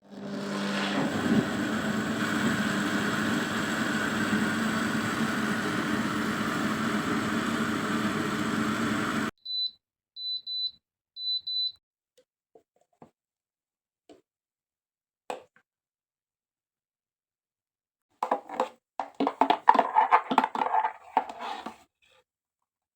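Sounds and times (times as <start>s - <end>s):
blender whirring: 0.0s - 9.3s.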